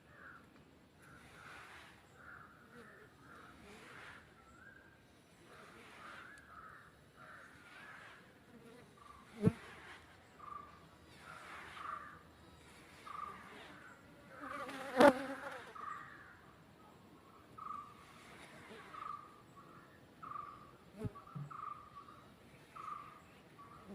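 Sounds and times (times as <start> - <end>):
honey bees buzzing: 13.1 - 15.8.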